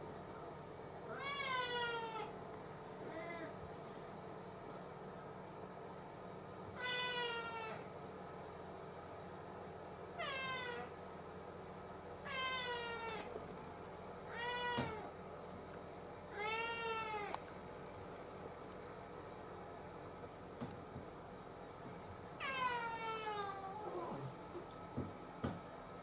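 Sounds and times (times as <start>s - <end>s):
cat meowing: 6.8s - 7.8s, 10.2s - 10.9s, 12.2s - 13.3s, 14.3s - 15.1s, 16.4s - 17.3s.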